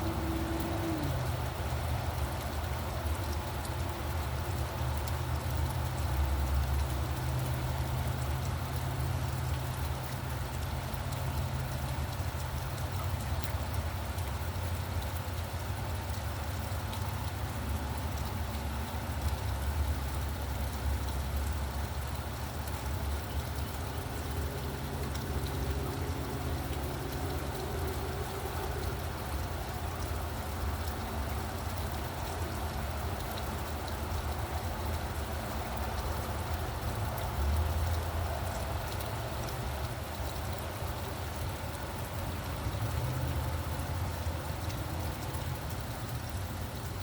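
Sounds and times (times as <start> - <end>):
vehicle engine hum: 0.0 - 4.7, 17.1 - 46.9
road traffic rumble: 0.0 - 47.0
steady rain falling: 0.0 - 47.0.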